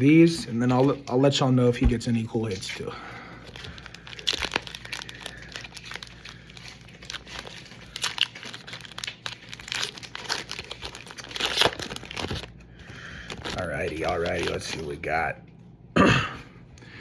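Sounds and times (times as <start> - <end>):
foil pack tearing and crinkling: 2.4 - 15.1.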